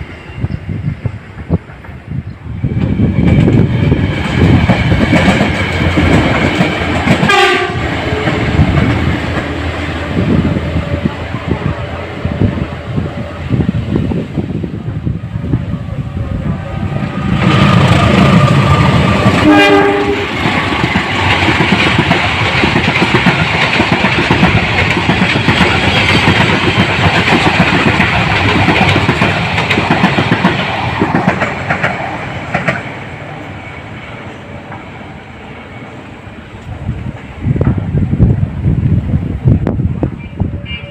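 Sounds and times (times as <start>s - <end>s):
train wheels clattering: 2.7s - 10.2s, 17.1s - 33.1s
train horn note: 7.2s - 8.5s, 19.3s - 20.5s, 40.2s - 40.9s.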